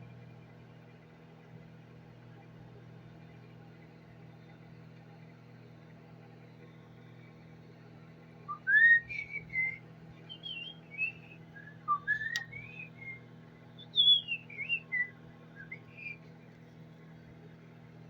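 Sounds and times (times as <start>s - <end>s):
steady low hum: 0.0s - 18.0s
person whistling: 10.4s - 13.2s
sharp click: 12.3s - 12.5s.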